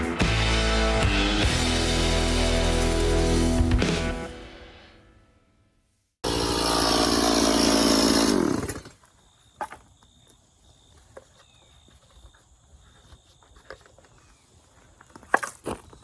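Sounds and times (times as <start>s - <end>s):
chainsaw running: 0.0s - 4.2s, 6.2s - 8.9s.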